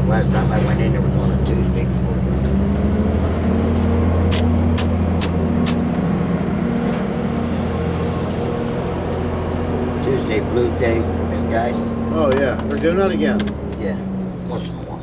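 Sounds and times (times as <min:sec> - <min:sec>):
engine idling: 0:00.0 - 0:15.0
sharp clicks: 0:04.3 - 0:05.8.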